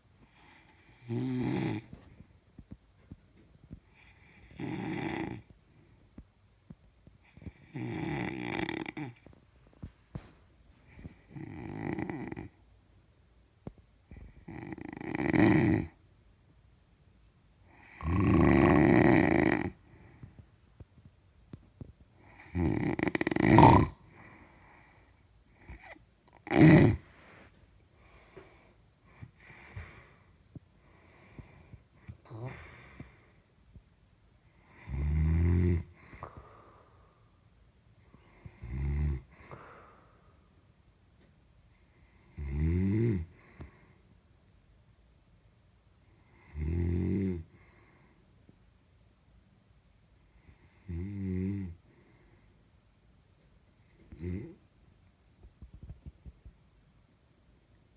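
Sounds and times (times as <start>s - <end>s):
faint snorts and breaths: 0.1s - 6.3s, 7.1s - 12.6s, 17.7s - 20.5s, 22.2s - 33.6s, 34.5s - 40.8s
loud rasping snores: 0.5s - 2.0s, 4.0s - 5.5s, 7.4s - 9.2s, 11.0s - 12.6s, 14.1s - 16.0s, 17.8s - 19.8s, 22.3s - 24.4s, 25.6s - 27.4s, 34.7s - 36.9s, 38.3s - 40.0s, 42.3s - 43.5s, 46.4s - 47.5s, 50.6s - 51.8s, 54.0s - 54.6s.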